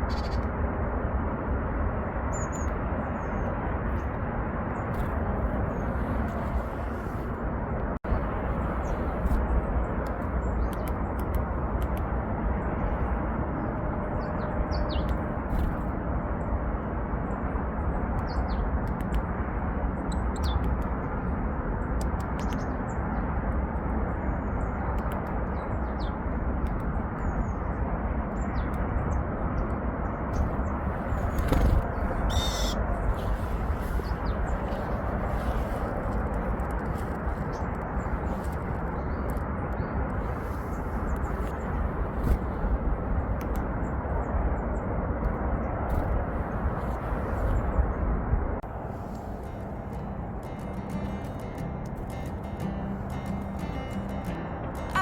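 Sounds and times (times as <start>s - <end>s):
small songbirds calling: 0.0s - 0.5s, 2.3s - 4.1s, 8.1s - 12.0s, 12.6s - 15.8s, 17.2s - 19.1s, 20.0s - 20.9s, 22.1s - 23.3s, 24.1s - 44.9s.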